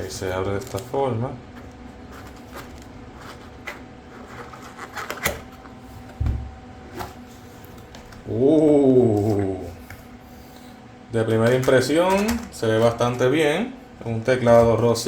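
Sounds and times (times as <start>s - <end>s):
cardboard packaging rustling: 0.0s - 6.2s.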